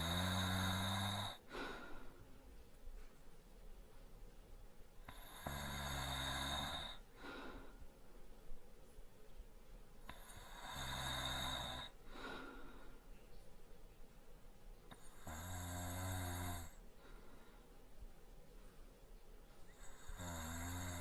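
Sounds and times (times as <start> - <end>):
man snoring: 0.0 - 1.5, 5.1 - 7.0, 10.1 - 12.0, 15.0 - 16.8, 19.8 - 21.0.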